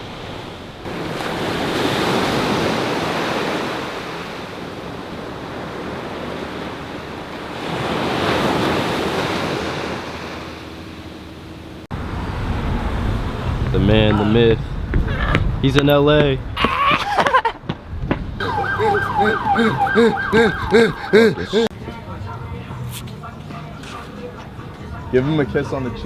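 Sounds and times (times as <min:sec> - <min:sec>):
ocean waves breaking: 0:00.0 - 0:14.2, 0:18.4 - 0:21.7.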